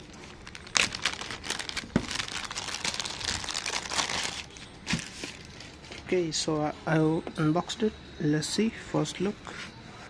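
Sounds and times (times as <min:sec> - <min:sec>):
packaging crinkling and rustling: 0:00.0 - 0:06.2.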